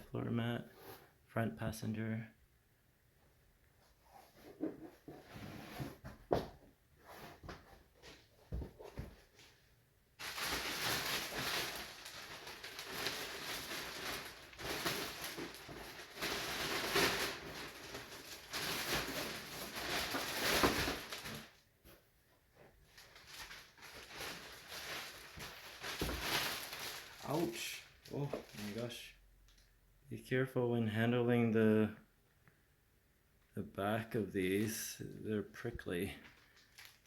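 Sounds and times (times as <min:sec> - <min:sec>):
plastic packaging rustling: 0:10.2 - 0:21.6, 0:22.7 - 0:29.6, 0:36.2 - 0:37.0.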